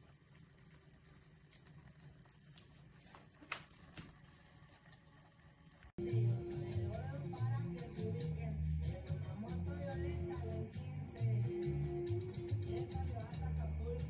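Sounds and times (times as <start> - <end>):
water dripping: 0.0 - 6.0
music: 6.0 - 14.0.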